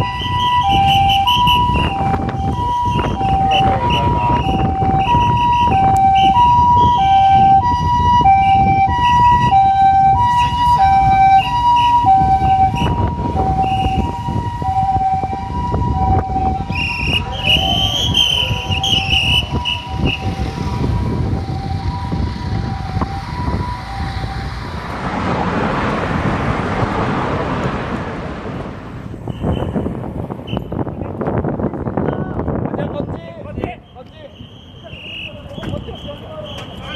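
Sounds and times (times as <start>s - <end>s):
ambulance siren hi-lo: 0.0s - 25.6s
rush of traffic: 0.0s - 36.9s.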